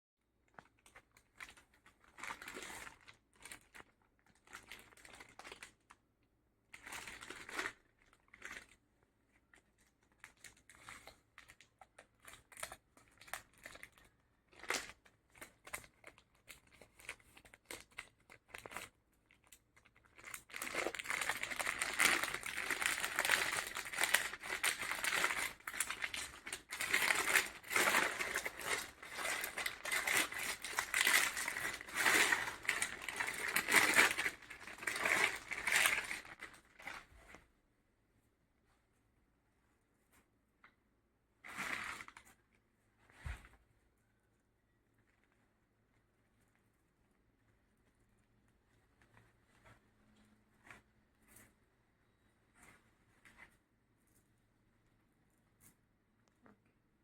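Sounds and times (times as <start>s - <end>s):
packaging crinkling and tearing: 0.5s - 5.9s, 6.7s - 8.8s, 9.4s - 37.1s.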